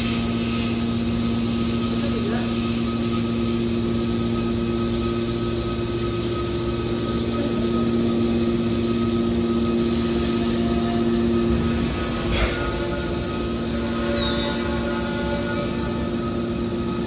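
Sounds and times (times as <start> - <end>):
hydraulic baler humming: 0.0 - 17.0.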